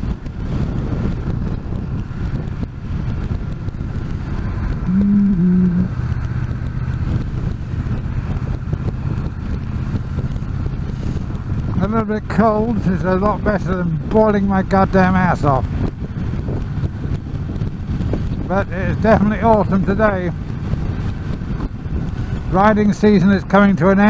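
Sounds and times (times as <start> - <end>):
low wind rumble: 0.0 - 24.0
motorcycle engine running: 0.0 - 24.0
short two-part tone: 4.9 - 5.9.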